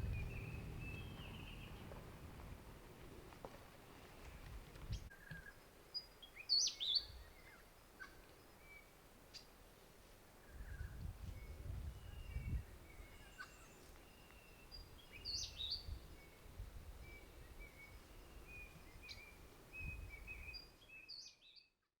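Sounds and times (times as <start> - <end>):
low uneven rumble: 0.0 - 5.1
birds calling faintly: 0.0 - 22.0.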